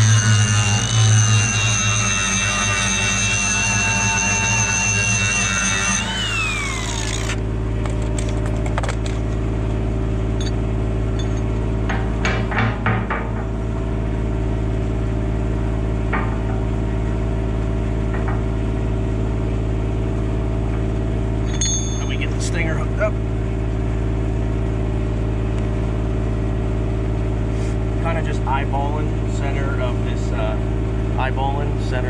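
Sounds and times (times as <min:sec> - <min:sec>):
angle grinder whining: 0:00.0 - 0:09.7
engine running: 0:00.0 - 0:32.0
metal being handled: 0:07.8 - 0:09.5.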